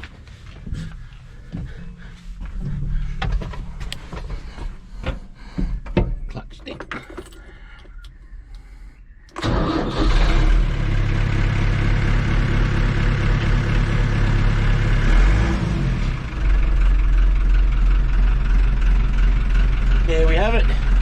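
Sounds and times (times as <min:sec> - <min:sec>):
tractor engine starting and idling: 0:09.2 - 0:21.0.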